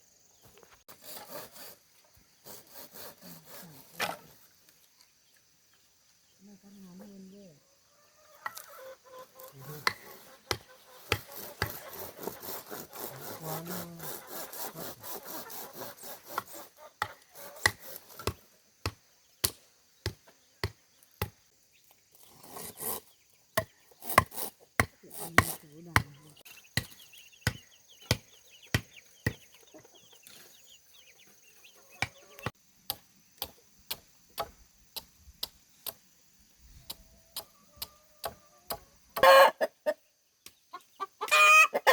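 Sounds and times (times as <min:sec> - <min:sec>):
rasping sawing: 0:00.9 - 0:04.3, 0:09.5 - 0:18.4, 0:22.2 - 0:23.1, 0:24.0 - 0:25.6.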